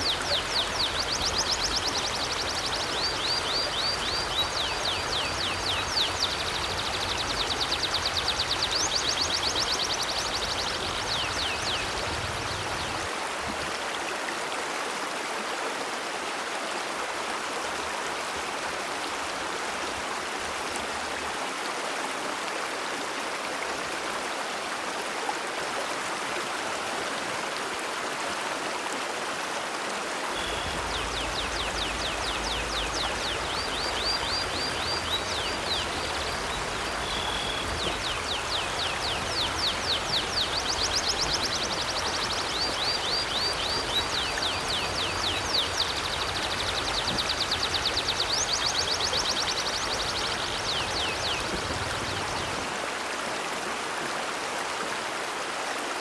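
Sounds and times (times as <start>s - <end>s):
river water rushing: 0.0s - 56.0s
bird chirping: 30.3s - 51.8s.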